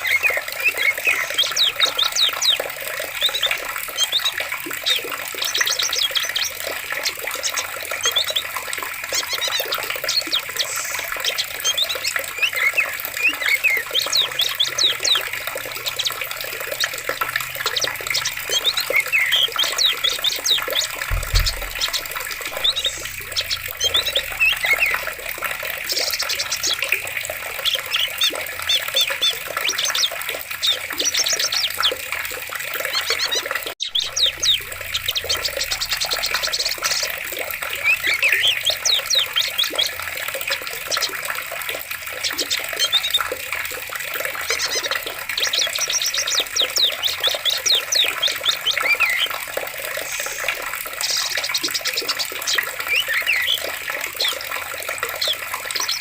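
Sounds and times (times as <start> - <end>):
birds chirping and singing: 0.0 - 32.1, 32.8 - 41.2, 44.3 - 56.0
water flowing: 0.0 - 56.0
low thump: 21.1 - 22.8.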